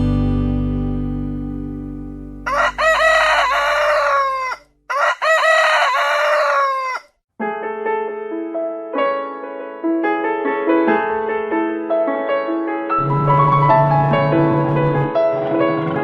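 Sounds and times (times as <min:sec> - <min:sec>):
rooster crowing: 0:02.5 - 0:07.1.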